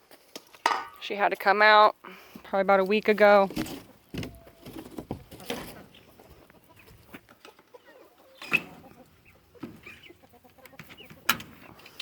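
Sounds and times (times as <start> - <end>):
chickens clucking: 3.6 - 12.0.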